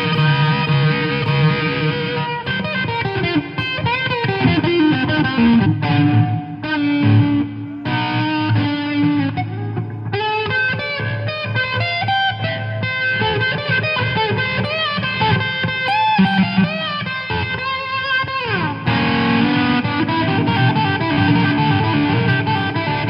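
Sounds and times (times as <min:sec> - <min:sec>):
electric guitar lead melody: 0:00.0 - 0:23.0.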